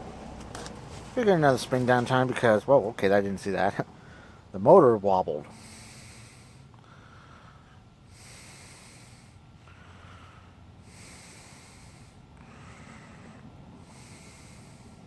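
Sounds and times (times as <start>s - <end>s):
low steady hum: 0.0s - 15.0s
faint breathing: 3.9s - 4.5s, 5.4s - 15.0s.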